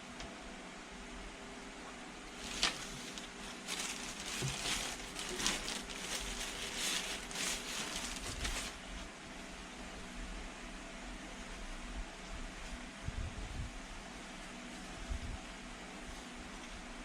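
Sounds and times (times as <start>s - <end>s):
desk fan humming: 0.0s - 9.4s
rustling and handling noise: 2.3s - 9.1s.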